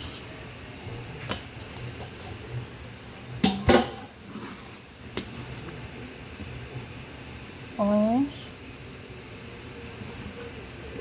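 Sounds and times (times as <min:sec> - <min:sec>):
utensils clanking on metal pot: 0:03.4 - 0:04.7.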